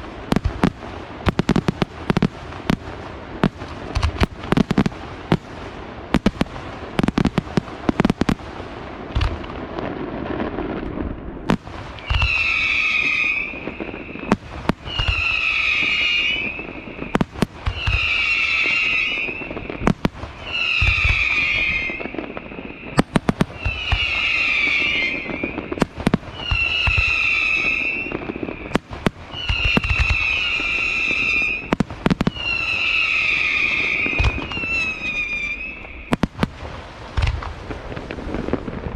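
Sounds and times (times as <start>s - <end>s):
shrill firework whistle dipping: 12.0s - 36.3s.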